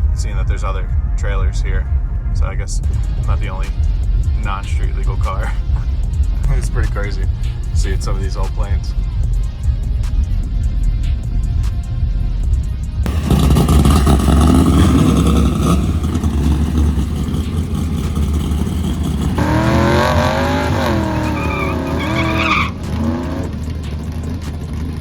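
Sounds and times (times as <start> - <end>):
car engine at high revs: 2.8 - 25.0
tyres squealing: 13.2 - 24.9.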